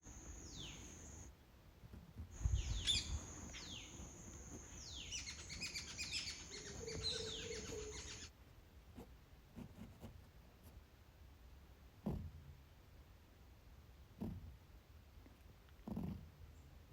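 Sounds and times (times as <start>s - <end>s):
parrots calling: 2.7s - 3.9s, 4.8s - 8.3s.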